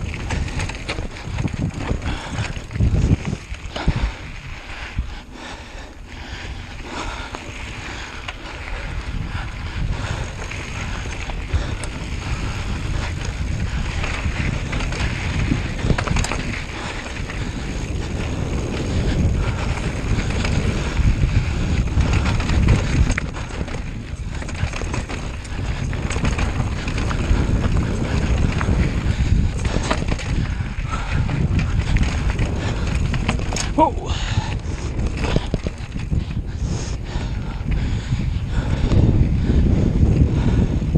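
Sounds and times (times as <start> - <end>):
low rumble of movement: 0.0 - 40.9
wind buffeting microphone: 0.0 - 40.9.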